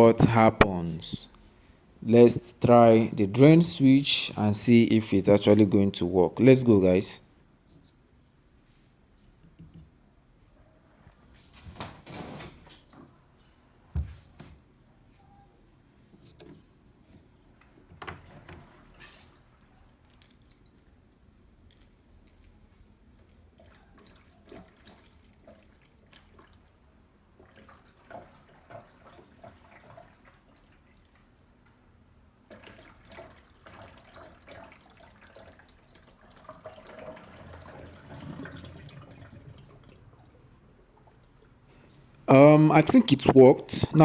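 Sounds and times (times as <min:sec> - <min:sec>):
water draining from washing machine: 0:16.6 - 0:41.8.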